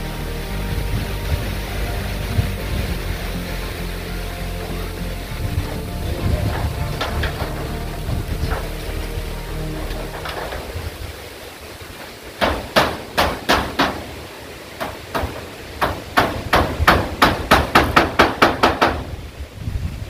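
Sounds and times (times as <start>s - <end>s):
hammer on metal roofing: 5.6s - 9.1s, 12.4s - 14.2s, 14.8s - 19.1s.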